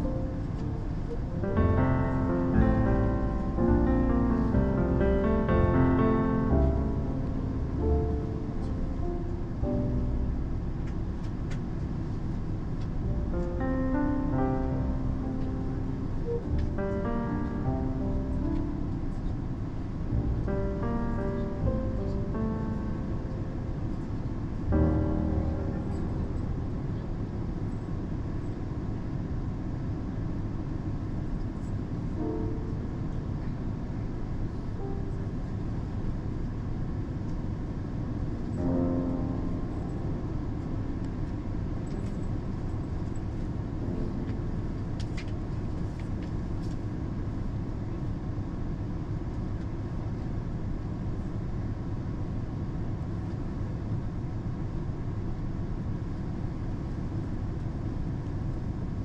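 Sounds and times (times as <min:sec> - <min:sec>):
train wheels rumbling on rail: 0:05.2 - 0:14.3.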